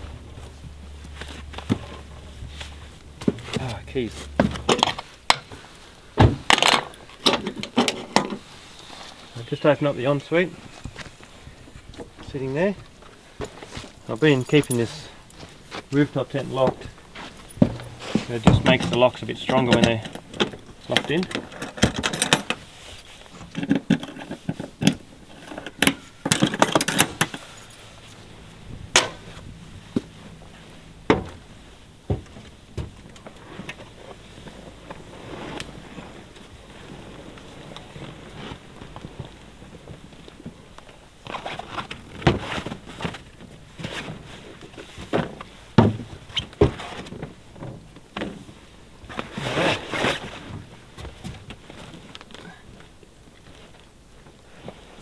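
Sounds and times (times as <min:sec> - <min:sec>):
rustling scrape: 0:00.0 - 0:06.1, 0:07.9 - 0:09.5, 0:13.5 - 0:19.6, 0:22.3 - 0:24.7, 0:33.4 - 0:39.2, 0:49.1 - 0:50.7
hardware knocks and rattles: 0:01.4 - 0:05.6, 0:17.4 - 0:22.6
metal locks and latches clicking: 0:06.5 - 0:08.4, 0:17.6 - 0:22.6, 0:23.6 - 0:27.7
keys jangling: 0:14.0 - 0:15.3, 0:17.4 - 0:18.9, 0:25.4 - 0:28.2.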